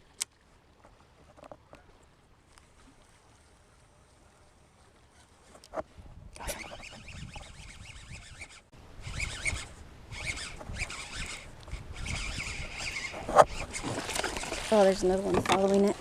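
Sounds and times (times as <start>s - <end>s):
sharp reel clicks: 6.4s - 14.5s
fishing reel whirring: 6.4s - 14.7s.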